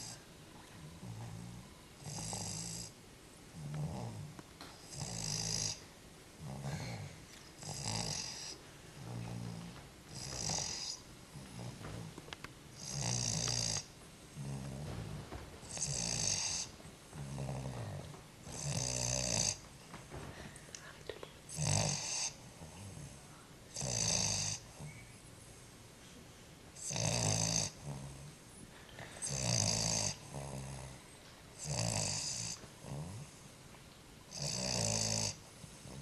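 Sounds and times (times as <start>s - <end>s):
person snoring: 4.9s - 5.8s, 6.4s - 12.1s, 12.8s - 15.1s, 15.7s - 19.6s, 21.5s - 23.1s, 26.8s - 28.2s, 29.2s - 30.9s, 31.6s - 33.2s, 34.3s - 36.0s.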